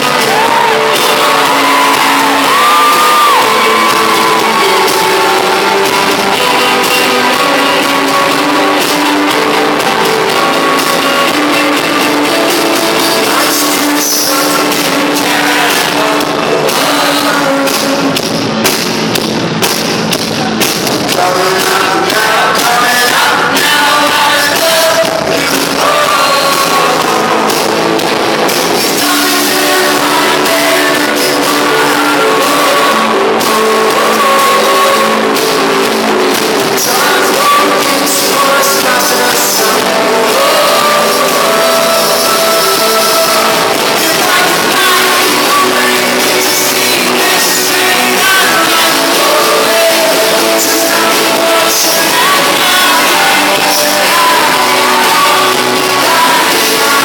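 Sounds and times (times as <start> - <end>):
live rock band playing: 0.0 - 57.0
person singing: 0.0 - 57.0.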